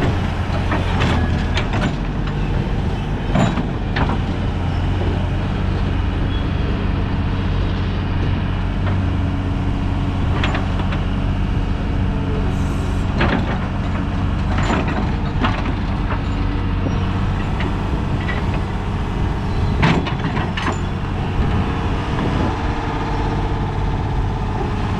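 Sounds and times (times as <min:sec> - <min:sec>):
metallic clanks and knocks: 0:00.0 - 0:06.4, 0:10.2 - 0:11.2, 0:13.1 - 0:21.6
diesel engine running: 0:00.0 - 0:24.9.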